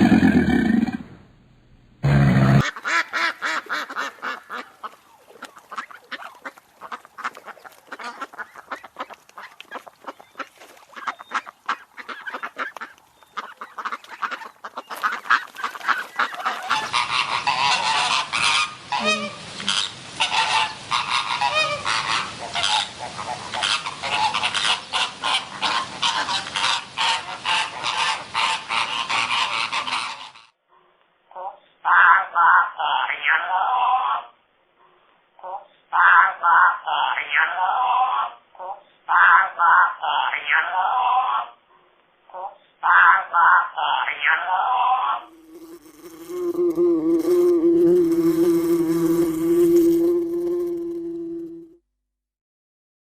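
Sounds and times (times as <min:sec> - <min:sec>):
geese honking: 0:11.0 - 0:30.4.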